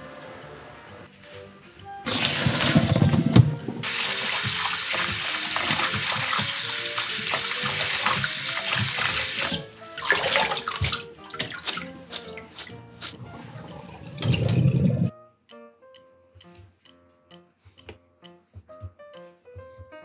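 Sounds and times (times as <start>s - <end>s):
water running from a tap: 2.1s - 15.1s.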